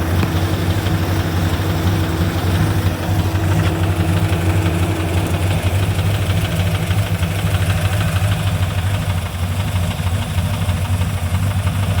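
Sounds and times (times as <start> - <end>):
engine idling: 0.0 - 12.0.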